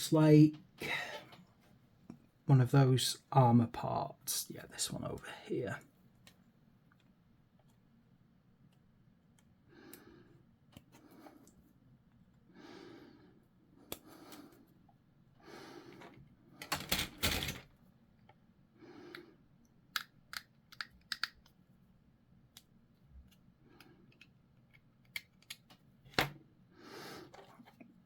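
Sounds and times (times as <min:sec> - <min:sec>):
plastic clicks and snaps: 0:19.9 - 0:21.6, 0:24.1 - 0:26.4.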